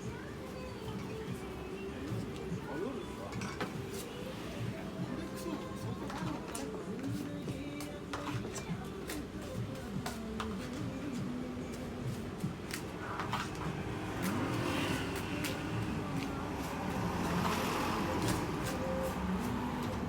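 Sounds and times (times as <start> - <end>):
faint voices: 0.0 - 12.2.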